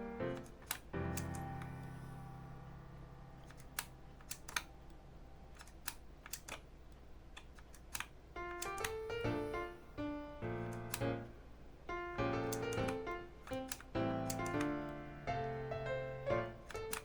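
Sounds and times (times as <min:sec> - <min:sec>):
held piano chord: 0:00.0 - 0:03.5, 0:08.4 - 0:17.0
sharp mechanical clicks: 0:03.4 - 0:04.7, 0:05.5 - 0:09.6, 0:10.4 - 0:11.3, 0:12.2 - 0:15.0, 0:15.8 - 0:17.0.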